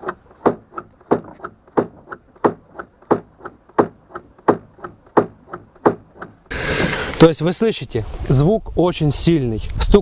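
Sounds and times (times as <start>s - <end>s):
car suspension knocking: 0.0s - 6.5s.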